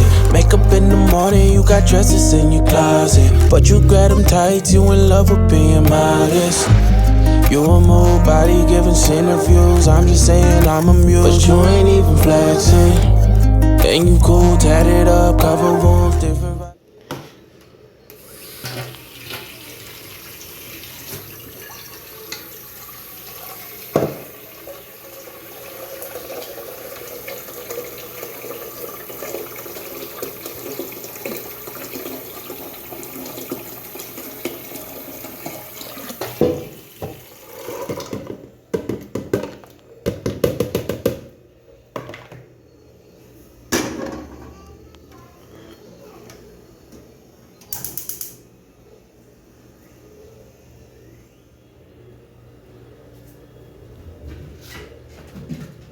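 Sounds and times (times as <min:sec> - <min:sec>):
tap water running into sink: 0:18.4 - 0:38.3.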